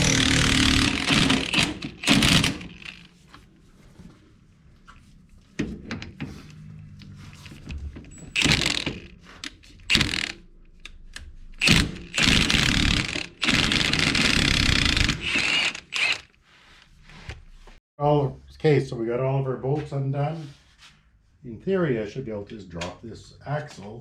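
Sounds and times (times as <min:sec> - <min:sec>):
impact wrench bursts: 0:00.0 - 0:03.1, 0:08.3 - 0:09.2, 0:09.8 - 0:10.4, 0:11.6 - 0:16.3.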